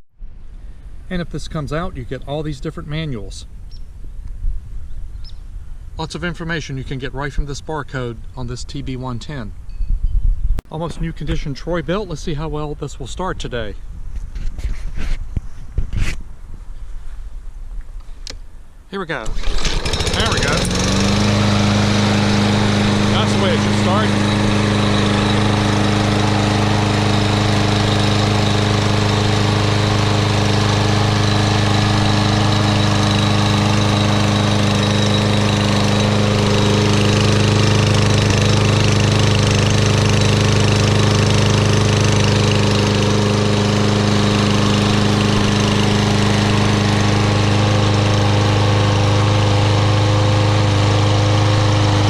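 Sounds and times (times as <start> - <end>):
lawn mower engine running: 19.0 - 52.0.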